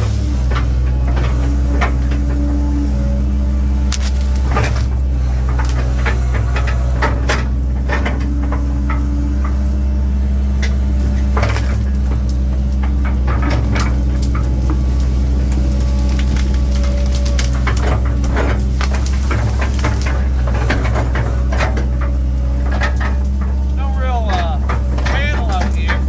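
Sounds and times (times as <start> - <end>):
excavator diesel engine running: 0.0 - 26.0
sharp knocks and cracks: 11.4 - 23.2.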